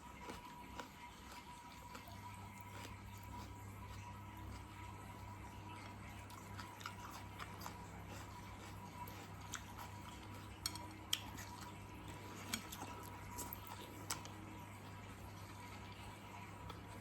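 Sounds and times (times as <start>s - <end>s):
electrical hum: 0.0s - 17.0s
person chewing: 0.0s - 17.0s
cutlery clicking on plate: 10.6s - 11.0s.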